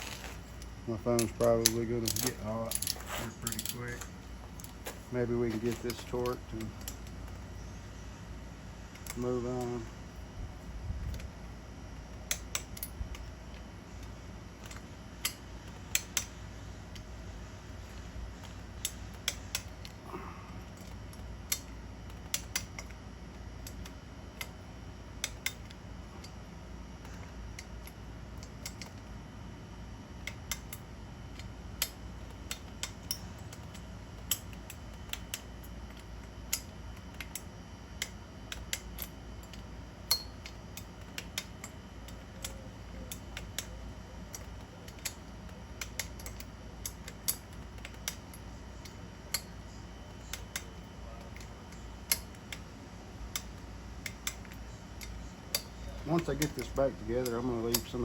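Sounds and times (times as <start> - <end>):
low steady hum: 0.0 - 58.0
metallic clicks of hand tools: 1.0 - 4.0, 31.4 - 48.3, 53.3 - 58.0.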